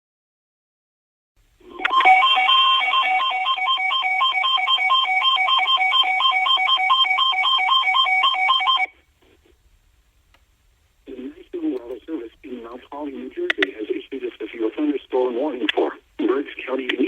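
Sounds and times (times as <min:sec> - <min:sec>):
two-pitch electronic alert warble: 0:01.7 - 0:08.9.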